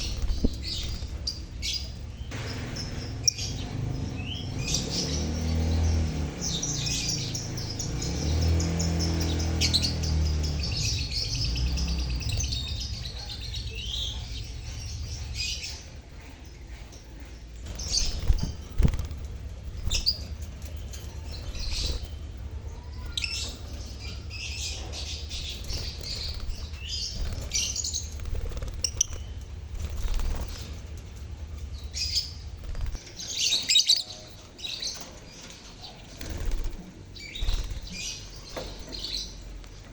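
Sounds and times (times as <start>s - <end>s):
birds chirping and chattering: 0.0s - 39.9s
low rumble: 9.9s - 33.4s.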